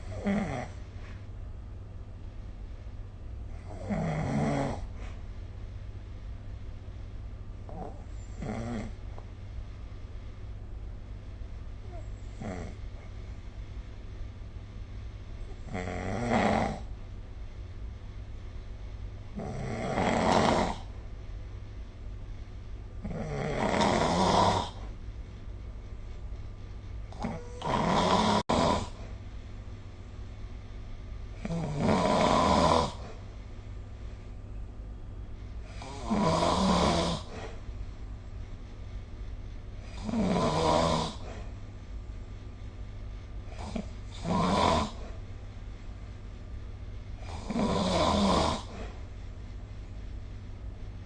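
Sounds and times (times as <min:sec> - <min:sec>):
person snoring: 0:00.0 - 0:00.8, 0:03.6 - 0:04.9, 0:07.7 - 0:09.0, 0:11.9 - 0:12.8, 0:15.6 - 0:16.9, 0:19.4 - 0:20.9, 0:23.0 - 0:24.9, 0:27.1 - 0:29.1, 0:31.4 - 0:33.2, 0:35.7 - 0:37.6, 0:39.8 - 0:41.4, 0:43.6 - 0:45.2, 0:47.2 - 0:49.0
steady low hum: 0:00.0 - 0:51.0.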